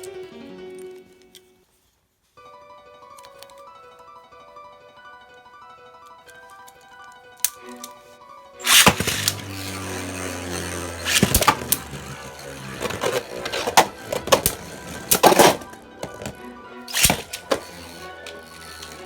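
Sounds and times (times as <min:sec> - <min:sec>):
background music: 0:00.0 - 0:01.7, 0:02.4 - 0:19.0
plastic clacks of colliding tops: 0:08.6 - 0:19.0
spinning tops launching rasp: 0:08.6 - 0:19.0
spinning tops scraping: 0:08.6 - 0:19.0.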